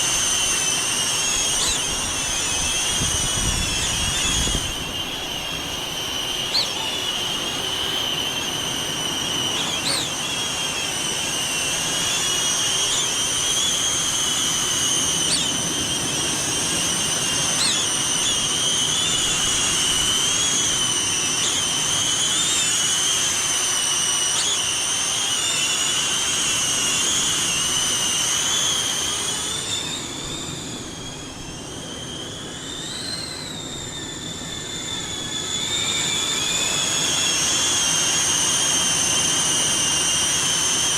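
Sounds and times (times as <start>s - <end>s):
drone propellers whining: 0.0s - 40.9s.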